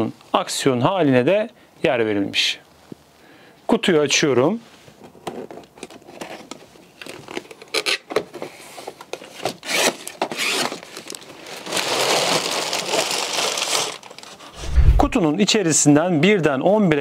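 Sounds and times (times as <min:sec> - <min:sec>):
cardboard box being torn open: 0:09.6 - 0:14.3
plastic bags of bricks rattling: 0:10.8 - 0:14.5.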